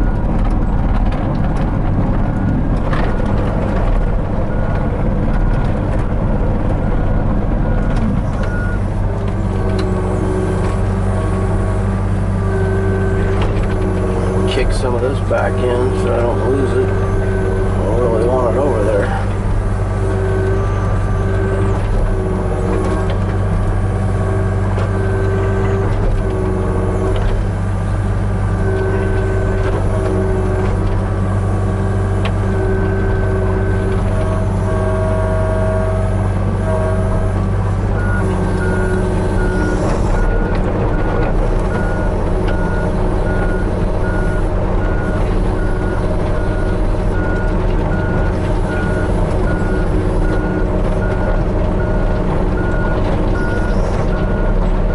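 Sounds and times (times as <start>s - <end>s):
diesel engine running under load: 0.0s - 54.9s
hydraulic whine: 7.7s - 54.9s
regular beeping alarm: 9.6s - 23.2s, 28.6s - 54.7s.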